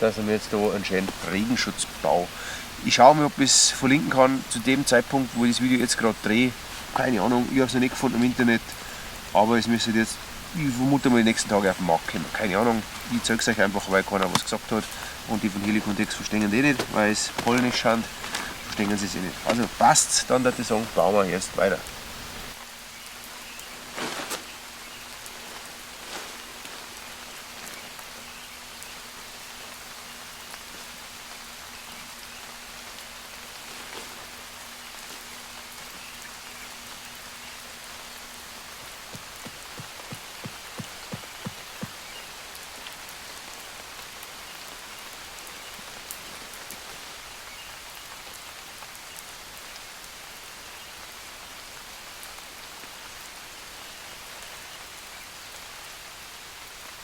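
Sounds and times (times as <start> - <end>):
steady rain pattering: 0.0 - 57.0
light taps: 38.8 - 42.0.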